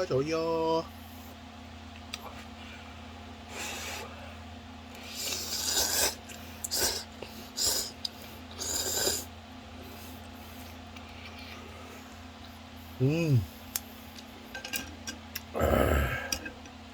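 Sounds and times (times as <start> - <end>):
low electrical hum: 0.0 - 16.9
person slurping noodles: 5.0 - 9.3.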